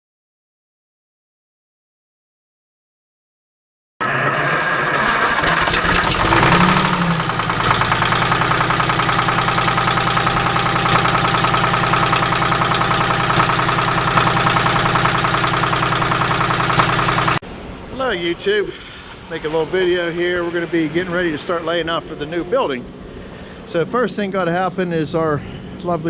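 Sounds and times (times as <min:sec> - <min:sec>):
engine idling: 0:04.0 - 0:17.4.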